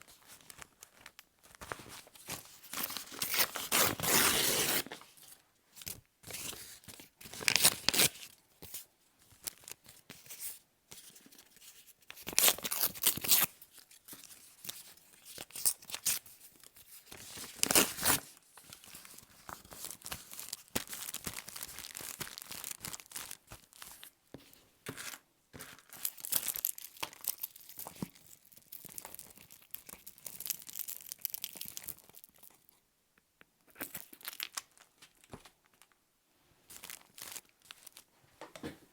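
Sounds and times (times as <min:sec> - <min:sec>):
paper tearing and rustling: 0:01.7 - 0:05.0, 0:07.3 - 0:08.2, 0:17.4 - 0:18.2.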